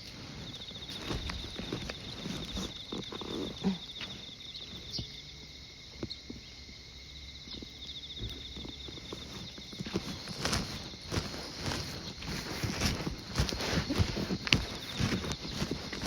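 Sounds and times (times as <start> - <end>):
light rustling: 0.0 - 5.0, 8.2 - 16.0
soft footsteps: 0.0 - 5.1, 7.5 - 16.0
insects trilling: 0.0 - 16.0.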